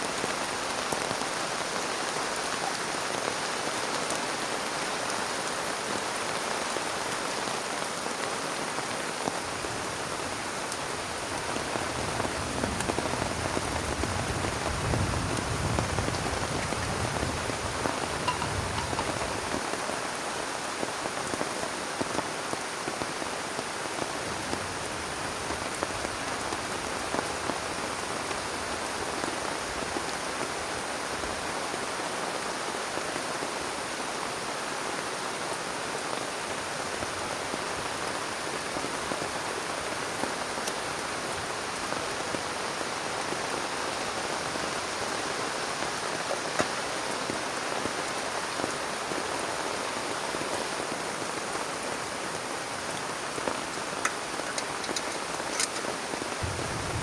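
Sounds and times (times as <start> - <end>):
heavy rain pouring: 0.0 - 57.0
low rumble: 56.4 - 57.0.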